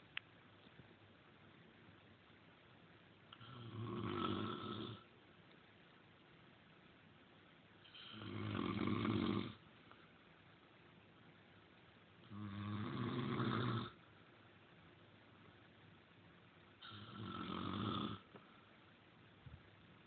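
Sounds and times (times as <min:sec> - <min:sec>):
long snores: 0:03.4 - 0:05.1, 0:07.9 - 0:09.6, 0:12.2 - 0:14.0, 0:16.8 - 0:18.3.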